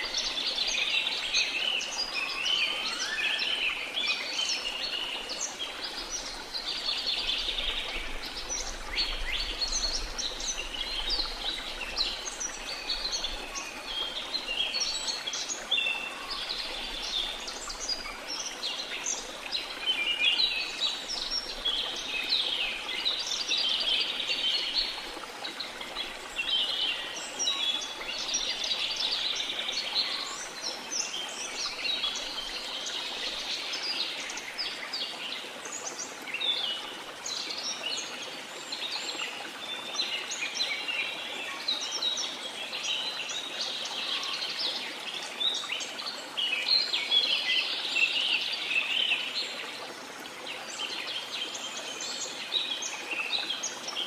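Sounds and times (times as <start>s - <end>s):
falling water rushing: 4.7s - 15.5s.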